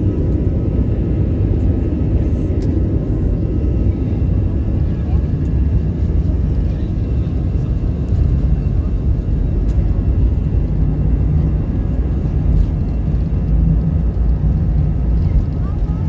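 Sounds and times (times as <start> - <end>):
jet engines roaring: 0.0 - 16.0.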